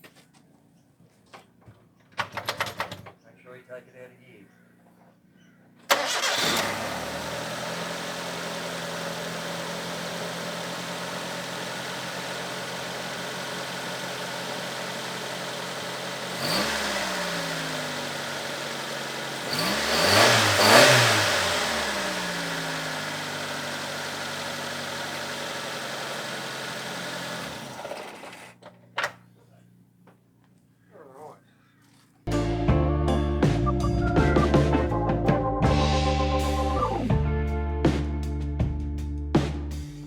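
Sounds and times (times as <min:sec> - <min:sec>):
car engine idling and revving: 0:05.9 - 0:28.2.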